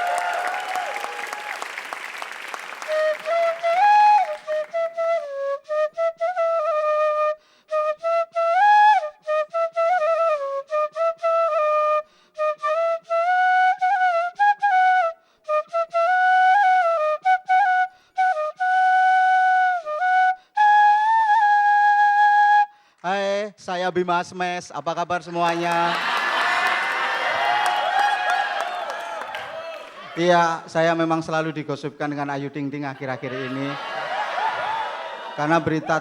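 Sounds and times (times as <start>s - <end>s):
solo wind instrument melody: 2.8s - 22.7s.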